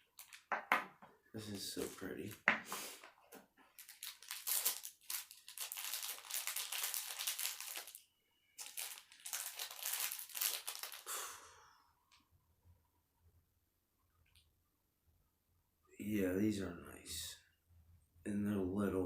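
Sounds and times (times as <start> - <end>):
packaging crinkling: 0.0 - 0.5, 3.6 - 8.0, 8.6 - 11.1.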